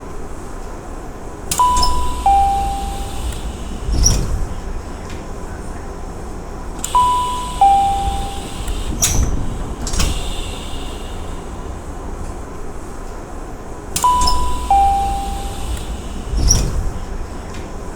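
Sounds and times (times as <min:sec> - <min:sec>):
railcar rumble: 0:00.0 - 0:17.9
two-note electronic door chime: 0:01.5 - 0:04.2, 0:06.8 - 0:11.7, 0:14.0 - 0:16.7.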